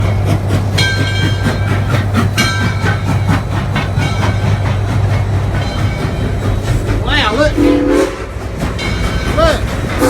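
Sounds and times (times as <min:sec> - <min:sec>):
steam locomotive chugging: 0:00.0 - 0:10.0
steam whistle blasts: 0:07.6 - 0:08.3.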